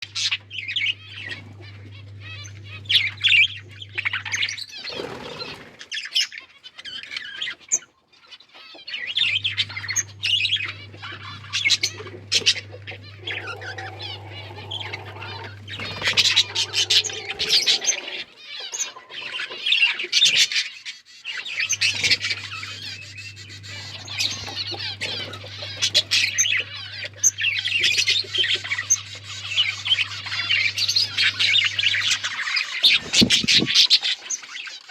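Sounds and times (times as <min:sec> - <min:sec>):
budgies chirping and chattering: 0:00.0 - 0:34.9
low steady hum: 0:08.8 - 0:19.8, 0:21.5 - 0:33.8.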